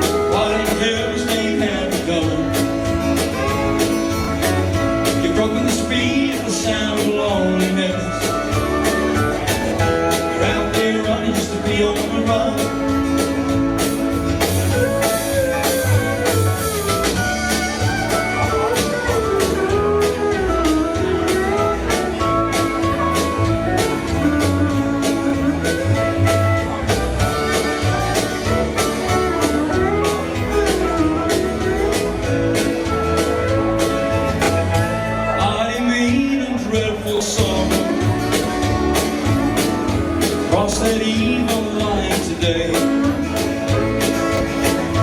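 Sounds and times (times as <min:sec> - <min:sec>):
bass guitar: 0:00.0 - 0:45.0
lead guitar melody: 0:00.0 - 0:45.0
steady drum beat: 0:00.0 - 0:45.0.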